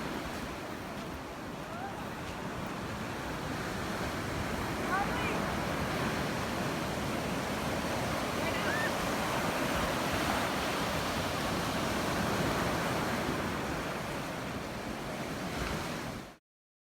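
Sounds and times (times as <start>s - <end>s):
ocean surf breaking: 0.0s - 16.3s.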